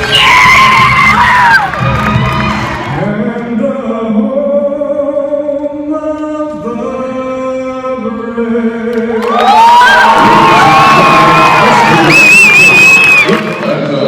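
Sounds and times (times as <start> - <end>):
crowd cheering and whooping: 0.0 - 3.1, 9.2 - 14.0.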